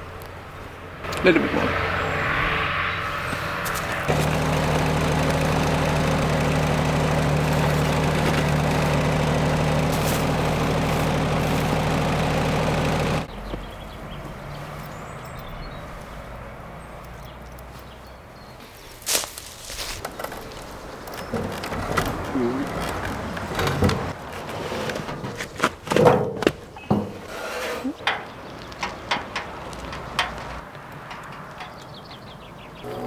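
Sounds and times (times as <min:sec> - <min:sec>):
sawmill engine running: 0:02.4 - 0:13.3, 0:19.9 - 0:25.9.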